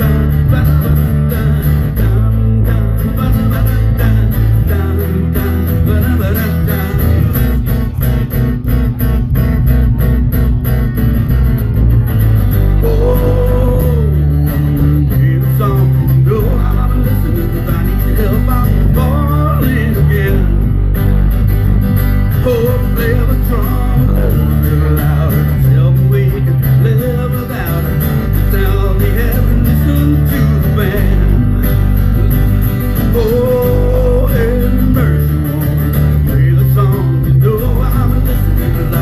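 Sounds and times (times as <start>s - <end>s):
pitch-bending guitar melody: 0.0s - 39.0s
steady bass line: 0.0s - 39.0s
strummed guitars: 0.0s - 39.0s.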